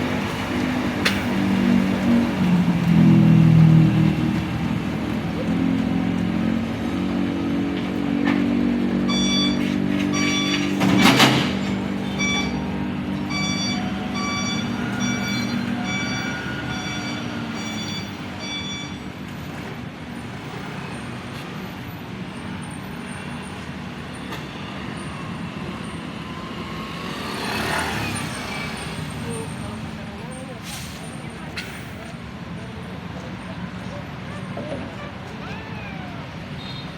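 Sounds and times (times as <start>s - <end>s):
heavy diesel machinery running: 0.0s - 26.8s
reversing alarm beeping: 9.0s - 19.5s.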